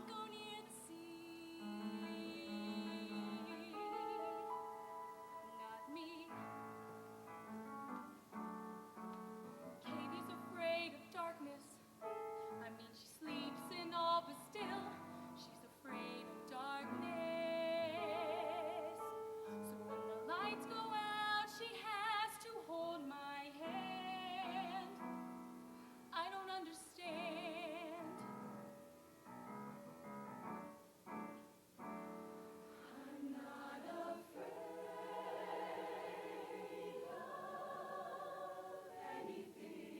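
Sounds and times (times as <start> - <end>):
piano accompaniment: 1.6 - 21.5, 27.1 - 39.9
choir singing: 32.7 - 39.9.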